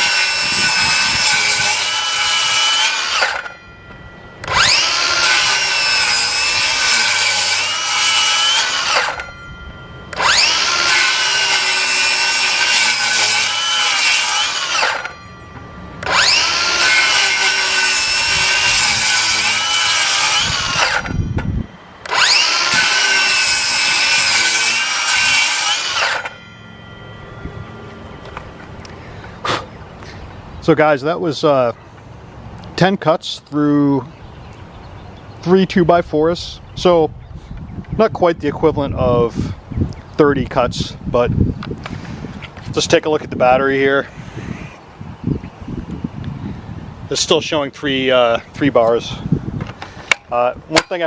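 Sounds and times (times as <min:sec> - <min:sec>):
circular saw cutting wood: 0:00.0 - 0:30.2.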